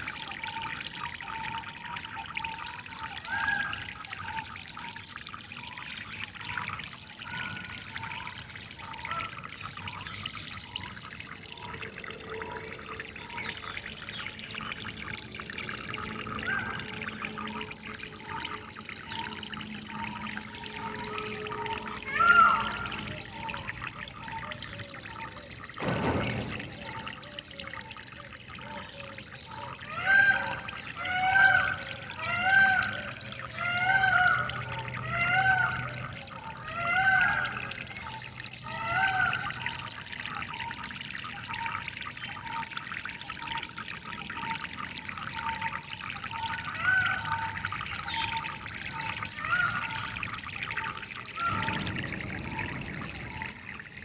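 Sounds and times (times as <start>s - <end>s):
water trickling and pouring: 0.0s - 54.0s
bird calling: 46.3s - 53.6s.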